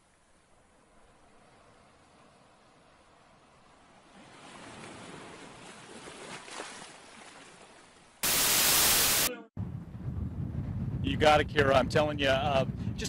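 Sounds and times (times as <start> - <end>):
surf rushing: 8.2 - 9.3
wind blasting microphone: 9.0 - 13.0.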